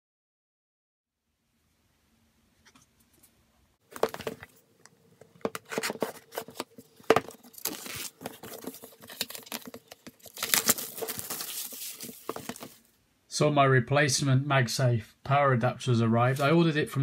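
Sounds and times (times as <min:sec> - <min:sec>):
packaging tearing and crinkling: 0:05.6 - 0:12.8.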